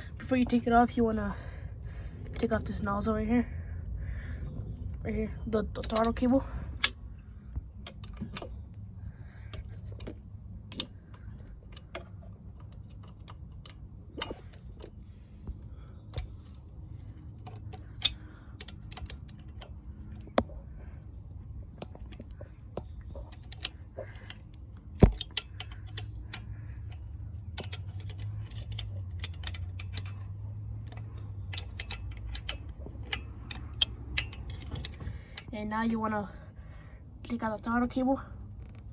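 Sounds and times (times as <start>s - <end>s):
steady low hum: 0.0s - 38.9s
metal tools clinking: 23.2s - 35.5s.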